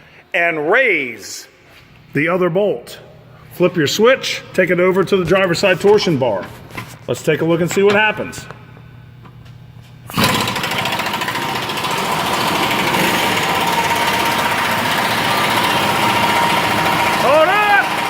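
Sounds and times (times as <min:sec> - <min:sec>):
impact wrench running: 0:10.1 - 0:18.0.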